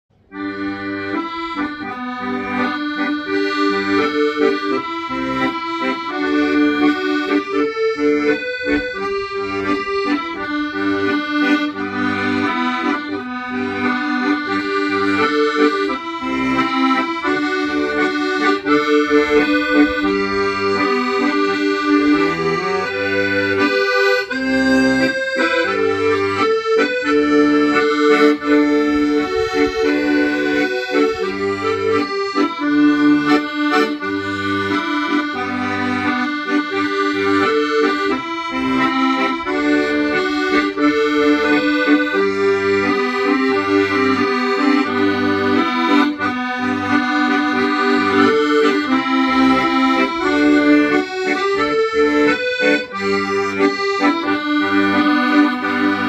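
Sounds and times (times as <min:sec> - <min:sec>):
accordion playing hymn tune: 0:00.1 - 0:56.0.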